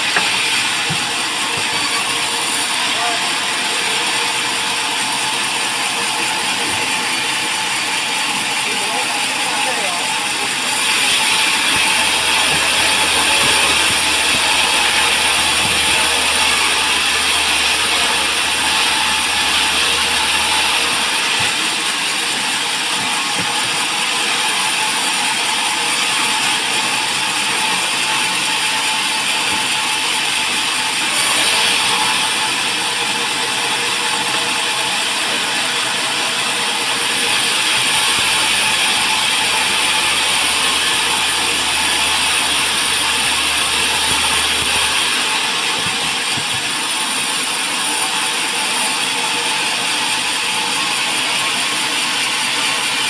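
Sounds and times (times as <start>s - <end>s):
band saw hiss and whine: 0.0s - 6.2s, 10.6s - 23.3s, 25.6s - 48.0s.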